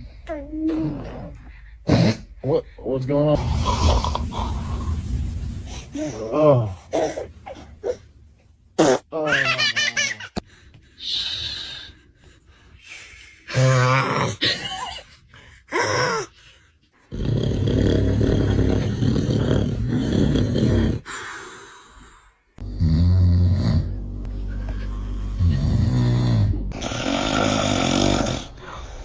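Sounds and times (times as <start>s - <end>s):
man snoring heavily: 17.1s - 21.2s, 22.6s - 24.0s, 25.2s - 28.6s.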